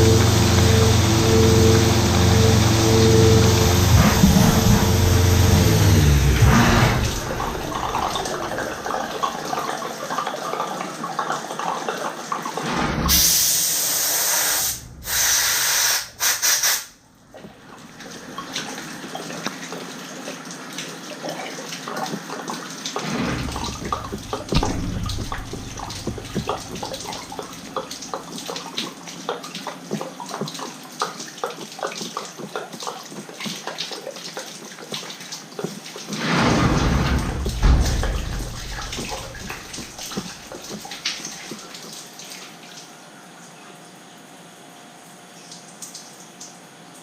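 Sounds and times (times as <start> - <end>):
water spraying and splashing: 0.0 - 9.9, 12.4 - 42.7
loud hiss: 13.1 - 16.9.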